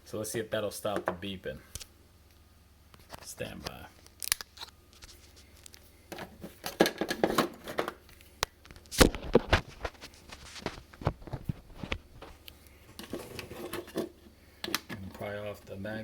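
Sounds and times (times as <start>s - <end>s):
plastic scraping and rustling: 3.0s - 15.3s.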